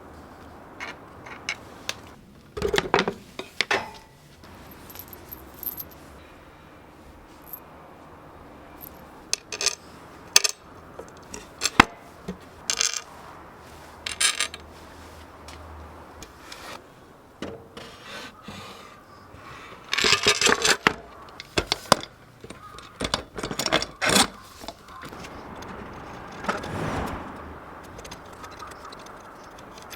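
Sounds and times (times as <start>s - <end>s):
metal tools clinking and scraping: 3.3s - 6.2s, 8.8s - 11.9s, 14.0s - 14.7s
metal parts rattling: 3.8s - 6.0s, 14.1s - 14.6s.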